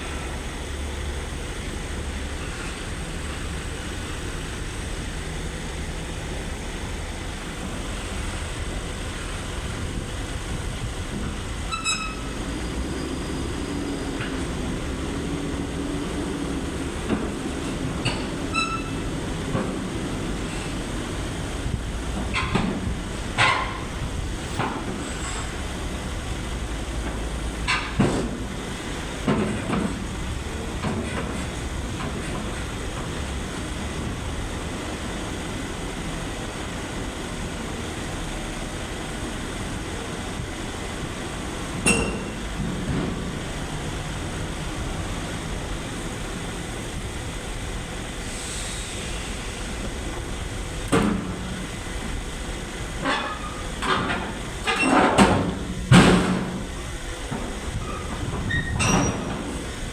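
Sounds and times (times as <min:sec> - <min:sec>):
excavator engine rumble: 0:00.0 - 0:59.9
excavator knocks and clanks: 0:07.4 - 0:12.9, 0:13.5 - 0:34.2, 0:40.3 - 0:47.0, 0:49.8 - 0:59.9.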